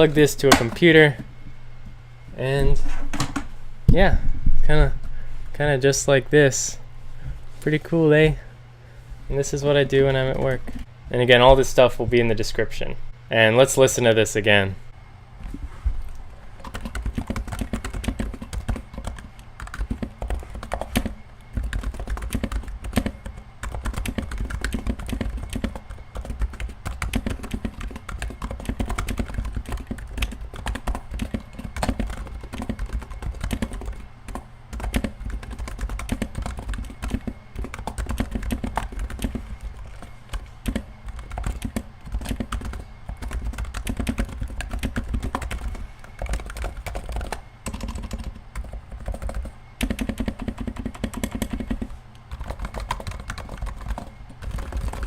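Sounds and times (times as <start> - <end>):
fast keyboard typing: 10.1 - 10.9, 16.6 - 55.0.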